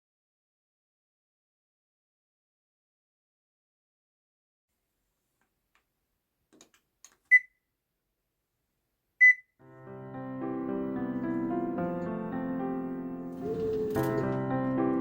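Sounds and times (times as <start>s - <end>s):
short electronic beeps: 9.2s - 9.4s
piano music: 9.6s - 15.0s.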